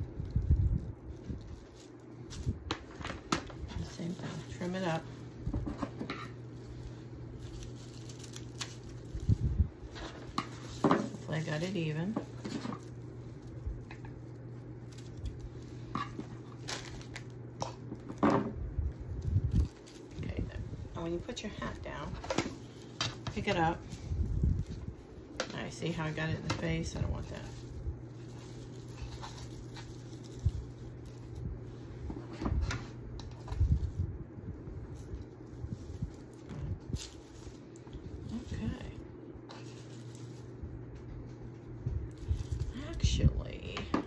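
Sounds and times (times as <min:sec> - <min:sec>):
craft materials rustling: 0:00.0 - 0:44.0
steady low hum: 0:00.0 - 0:44.0
craft materials knocking and rustling: 0:09.9 - 0:11.4, 0:15.2 - 0:18.6.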